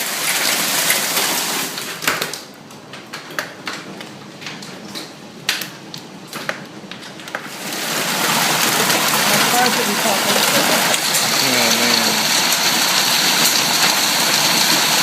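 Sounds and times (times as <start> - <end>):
hailstones knocking on hard surfaces: 7.4 - 15.0.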